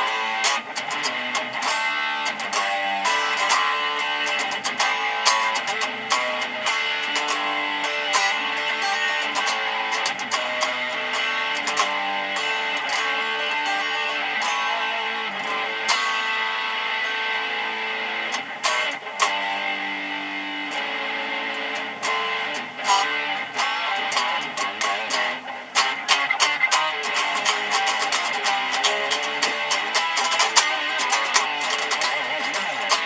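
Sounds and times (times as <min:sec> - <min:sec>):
electric guitar improvisation: 0:00.0 - 0:33.0.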